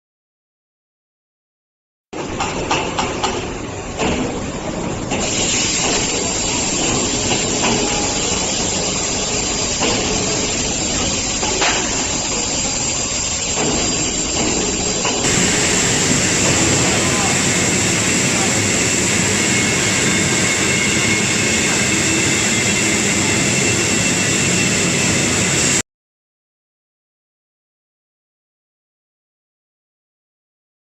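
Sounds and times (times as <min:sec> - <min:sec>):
plasma cutting machine hiss: 0:05.1 - 0:23.4.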